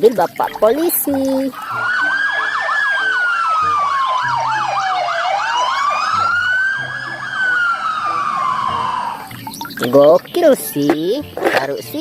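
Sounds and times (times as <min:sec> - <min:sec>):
police siren wailing: 0:00.5 - 0:10.0
police siren yelp: 0:00.9 - 0:09.6.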